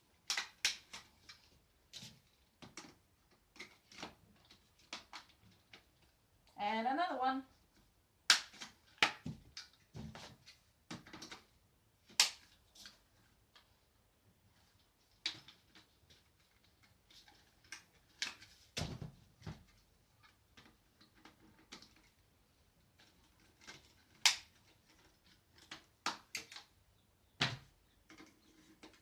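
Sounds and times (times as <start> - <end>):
sharp plastic snap: 0.2 - 1.1, 8.3 - 9.7, 12.1 - 12.6, 24.2 - 24.6.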